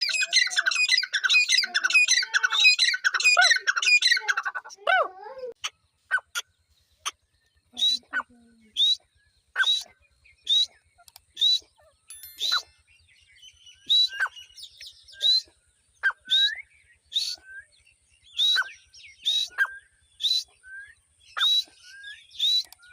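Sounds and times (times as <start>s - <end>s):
francolin calling: 5.6s - 17.5s.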